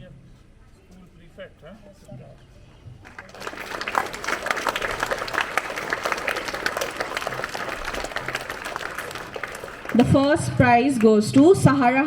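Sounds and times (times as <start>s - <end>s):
crowd applause: 3.0s - 11.2s.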